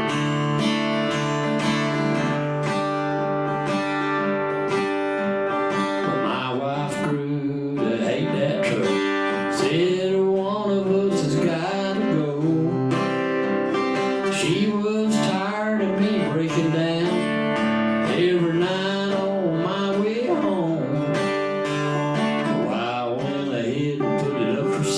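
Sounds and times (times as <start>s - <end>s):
acoustic guitar strumming: 0.0s - 24.9s
person singing: 5.8s - 24.9s.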